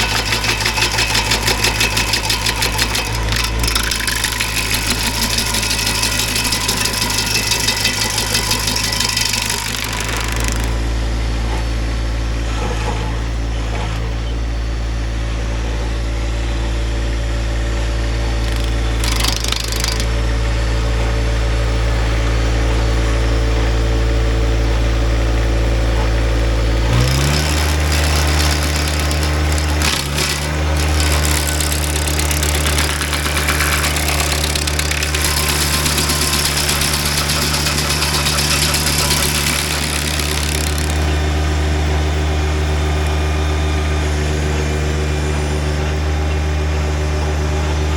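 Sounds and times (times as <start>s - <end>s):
stump grinder grinding wood: 0.0s - 13.2s, 17.5s - 21.5s, 25.1s - 47.9s
tractor engine running: 0.0s - 47.9s.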